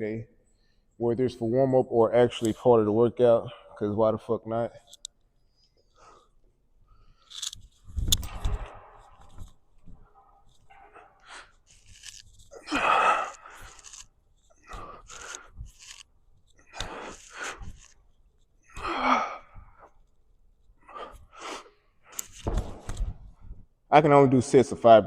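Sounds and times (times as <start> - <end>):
man grunting and exhaling: 12.5 - 14.0, 18.7 - 19.8.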